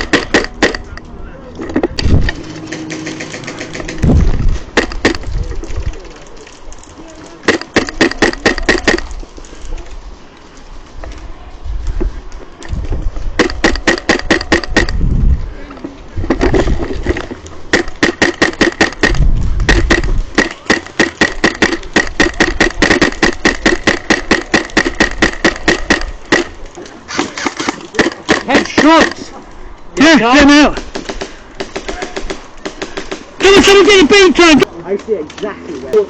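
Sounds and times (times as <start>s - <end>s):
airsoft rifle rapid bursts: 0.0s - 0.8s, 2.6s - 4.1s, 7.4s - 9.1s, 13.4s - 15.0s, 17.7s - 29.2s, 30.4s - 34.2s.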